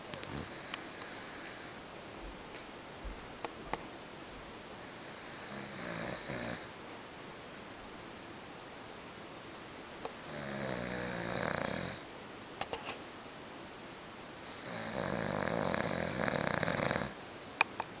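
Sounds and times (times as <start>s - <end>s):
man snoring: 0.1s - 1.8s, 4.8s - 6.7s, 10.0s - 12.0s, 14.4s - 17.2s.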